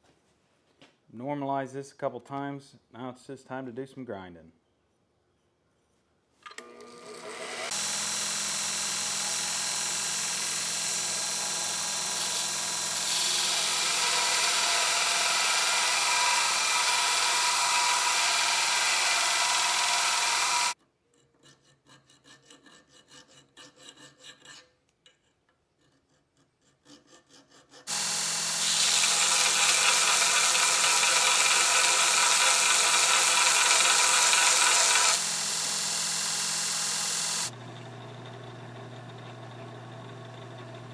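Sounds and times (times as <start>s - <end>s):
power grinder grinding steel: 6.6s - 20.8s, 27.9s - 37.8s.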